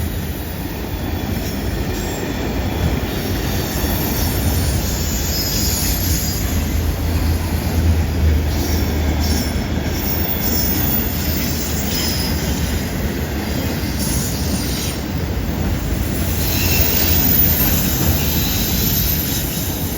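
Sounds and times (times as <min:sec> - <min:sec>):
train wheels rumbling on rail: 0:00.0 - 0:19.9
high wheel squeal: 0:03.3 - 0:07.3, 0:08.5 - 0:19.9.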